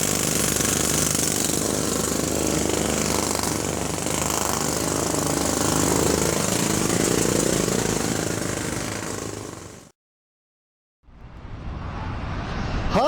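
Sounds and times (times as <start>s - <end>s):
jackhammer hammering: 0.0s - 9.9s
low drone: 11.1s - 13.0s.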